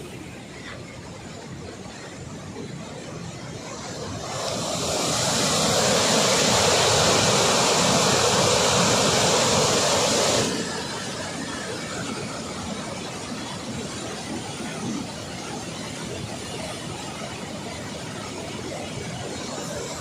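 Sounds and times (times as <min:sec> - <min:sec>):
water roaring from spillway: 0:00.0 - 0:20.0.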